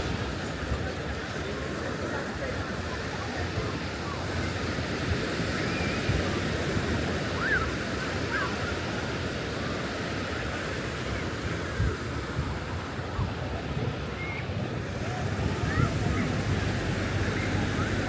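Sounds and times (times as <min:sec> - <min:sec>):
surf washing onto beach: 0:00.0 - 0:18.0
wind buffeting microphone: 0:11.1 - 0:18.0.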